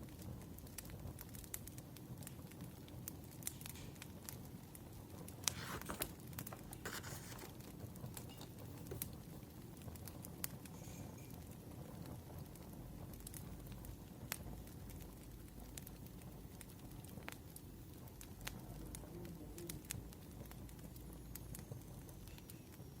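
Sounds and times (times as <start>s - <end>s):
wood fire crackling and popping: 0.0s - 23.0s
paper rustling: 5.4s - 7.7s.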